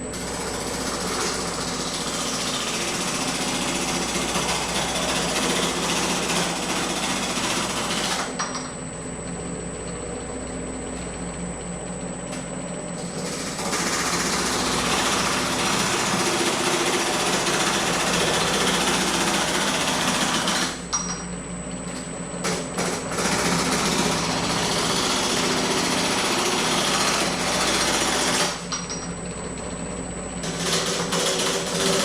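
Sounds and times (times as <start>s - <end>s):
motor humming: 9.0s - 20.7s, 22.6s - 32.0s
machine hammering sheet metal: 22.5s - 28.7s, 30.5s - 32.0s.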